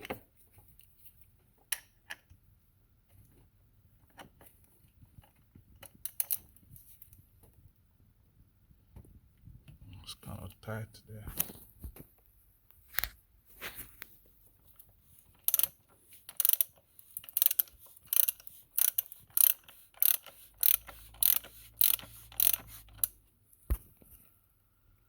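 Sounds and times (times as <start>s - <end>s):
ratchet wrench clicking: 6.0s - 6.4s, 15.4s - 23.2s.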